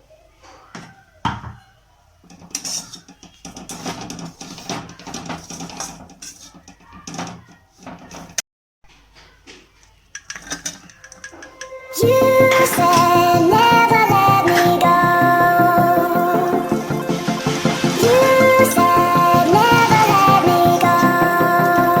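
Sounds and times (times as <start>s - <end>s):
spoon clattering on pots: 2.3s - 8.4s, 10.2s - 11.8s.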